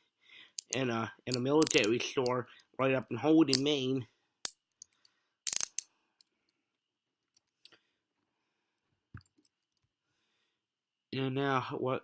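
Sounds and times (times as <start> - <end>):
handcuffs clicking and clinking: 0.6 - 2.3, 4.8 - 6.3.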